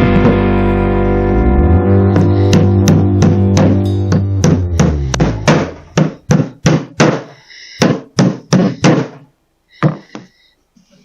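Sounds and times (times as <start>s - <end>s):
background music: 0.0s - 6.3s
hammer striking nail into wood: 2.5s - 9.2s.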